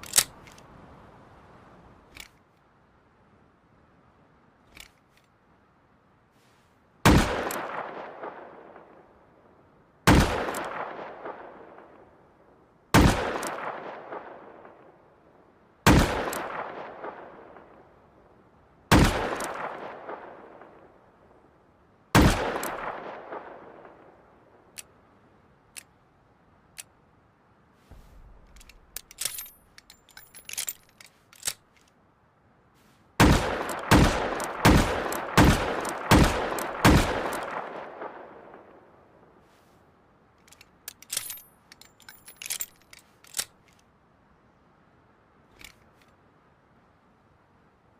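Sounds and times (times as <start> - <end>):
metallic clicks and clinks: 28.4 - 32.0, 40.4 - 43.8.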